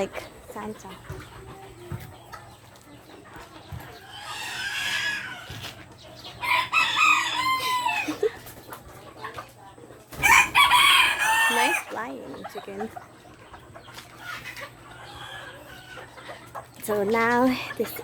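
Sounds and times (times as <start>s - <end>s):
roosters crowing: 3.9s - 8.4s, 10.1s - 12.2s, 14.2s - 16.4s.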